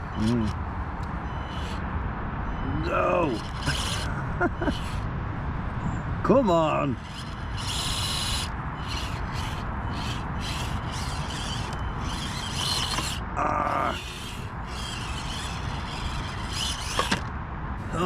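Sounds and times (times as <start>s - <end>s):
rc car motor whirring: 0.0s - 0.6s, 1.3s - 1.8s, 2.9s - 5.0s, 7.0s - 17.3s.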